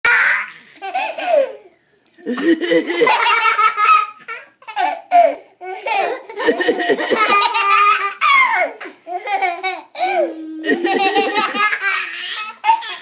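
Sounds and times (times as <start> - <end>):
fake coughing: 2.2 - 3.1
young child laughing: 2.2 - 13.0.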